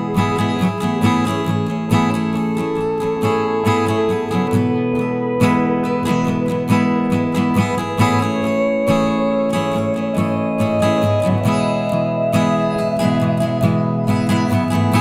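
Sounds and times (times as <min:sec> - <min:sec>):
strummed acoustic guitar: 0:00.0 - 0:15.0.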